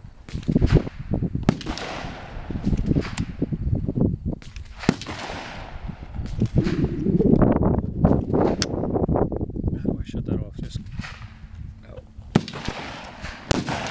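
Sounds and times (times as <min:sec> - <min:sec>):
low rumbling noise: 0:00.0 - 0:13.9
gunshots echoing: 0:00.3 - 0:03.4, 0:04.4 - 0:07.0, 0:12.3 - 0:13.9.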